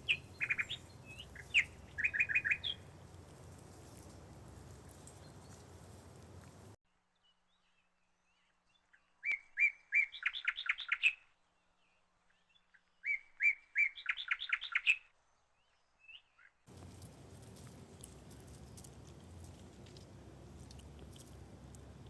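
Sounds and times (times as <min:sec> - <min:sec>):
small bird singing: 0:00.0 - 0:06.8, 0:16.7 - 0:22.0
background noise: 0:00.0 - 0:22.0.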